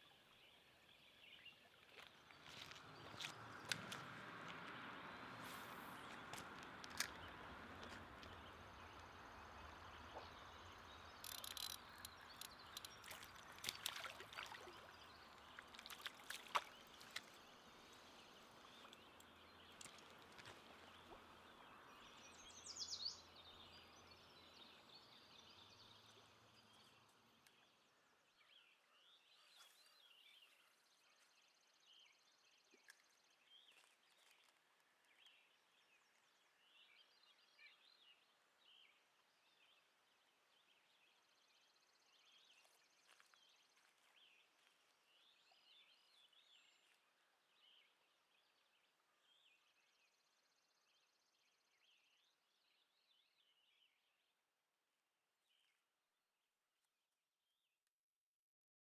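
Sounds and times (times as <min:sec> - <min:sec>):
faint bird chirps: 0:09.9 - 0:13.9
sharp clicks: 0:11.2 - 0:13.0.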